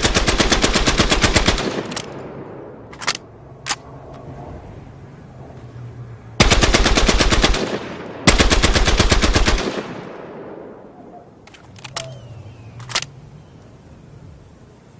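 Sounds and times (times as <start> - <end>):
machine gun bursts: 0.0 - 2.2, 6.4 - 9.9
sharp clicks: 1.4 - 2.3, 2.9 - 4.2, 11.4 - 13.7.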